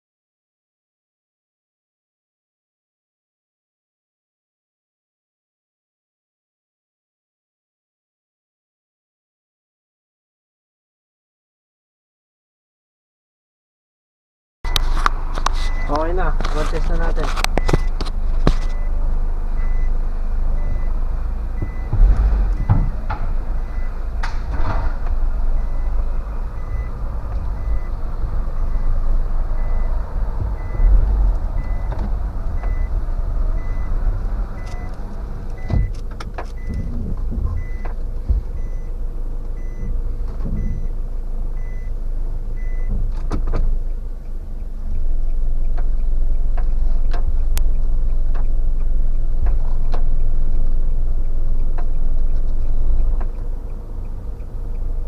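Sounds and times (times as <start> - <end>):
engine and road rumble: 14.6 - 55.0
short high beeps: 31.6 - 31.9, 32.6 - 32.9.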